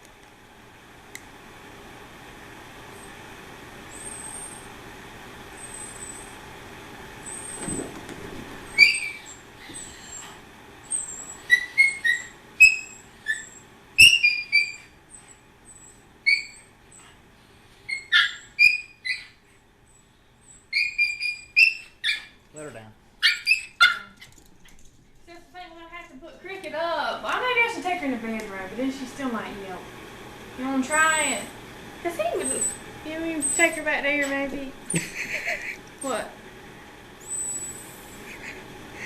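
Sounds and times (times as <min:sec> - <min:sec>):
dog whining and yipping: 0:03.9 - 0:04.7, 0:05.6 - 0:06.4, 0:07.2 - 0:07.7, 0:08.7 - 0:17.2, 0:17.9 - 0:19.5, 0:20.4 - 0:22.4, 0:23.2 - 0:24.3, 0:32.3 - 0:32.8, 0:33.4 - 0:33.8, 0:37.2 - 0:38.5.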